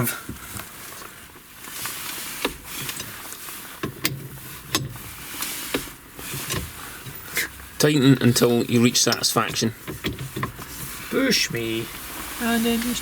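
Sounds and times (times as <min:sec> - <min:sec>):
tools clicking and knocking: 0:09.0 - 0:10.6
faint hiss: 0:10.6 - 0:13.0.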